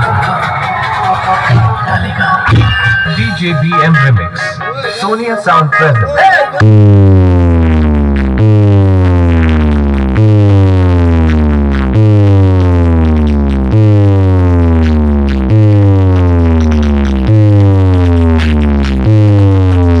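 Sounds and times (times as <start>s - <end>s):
deep synth bass gliding down: 6.6s - 20.0s.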